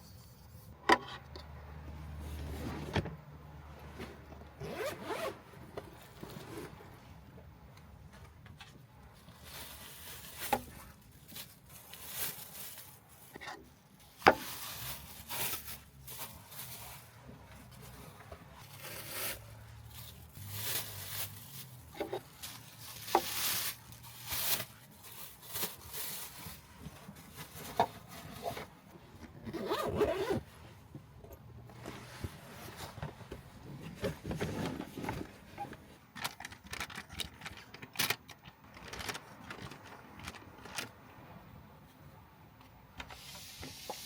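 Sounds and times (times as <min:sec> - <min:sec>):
rustling and scraping of handling: 0:02.2 - 0:41.1
zipper strokes: 0:04.6 - 0:05.4, 0:29.5 - 0:30.4.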